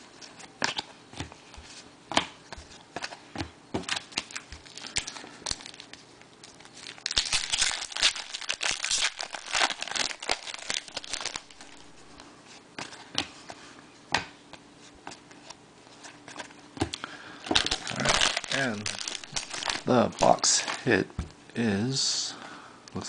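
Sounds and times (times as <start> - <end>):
plastic wrapper crinkling and tearing: 3.9 - 12.1, 17.4 - 20.9.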